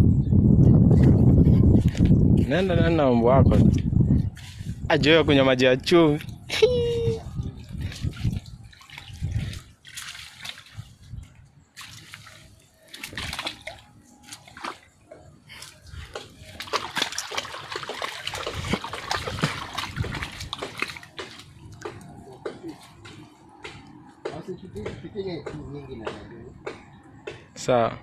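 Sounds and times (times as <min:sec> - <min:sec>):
seawater splashing: 0:07.5 - 0:24.0.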